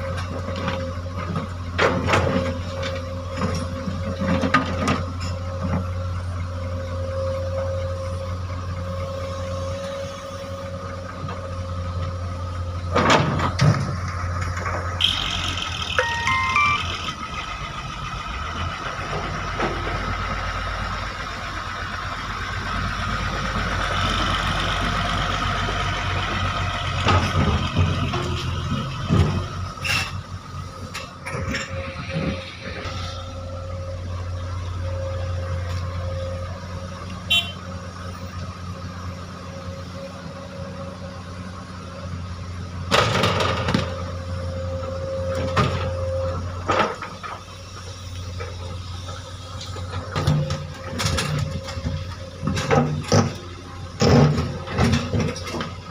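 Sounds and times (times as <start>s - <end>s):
diesel engine running: 0.0s - 55.9s
boulders striking steel truck bed: 49.8s - 55.9s.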